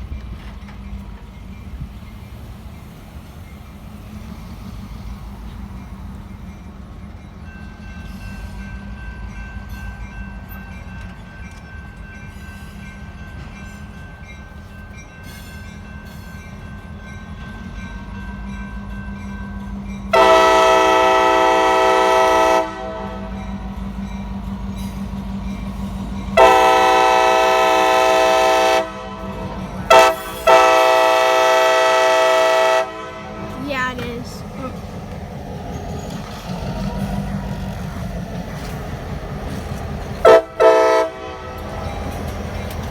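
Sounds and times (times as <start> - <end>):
locomotive engine rumble: 14.2 - 42.9
locomotive air horn blasts: 20.1 - 23.4, 26.4 - 33.6, 40.2 - 41.8.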